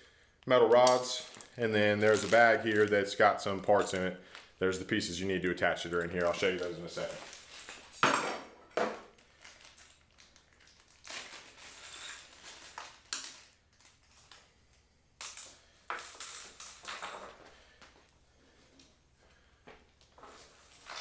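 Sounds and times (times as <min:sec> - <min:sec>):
plastic bag crinkling: 0:00.8 - 0:08.0, 0:09.0 - 0:14.4.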